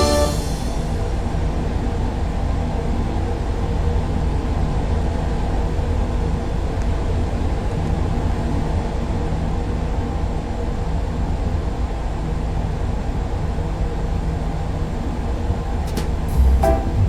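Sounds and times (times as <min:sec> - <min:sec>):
ceiling fan running: 0:00.0 - 0:01.2.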